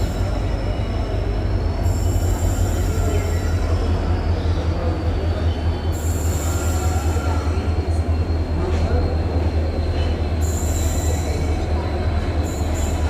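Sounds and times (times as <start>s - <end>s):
diesel locomotive engine hum: 0.0s - 13.0s
moving freight train: 0.0s - 13.0s.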